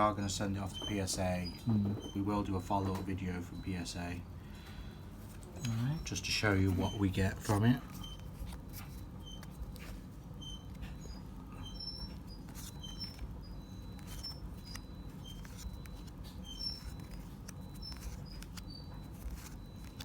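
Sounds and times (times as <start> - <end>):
high chirps or squeaks: 5.6 - 20.0.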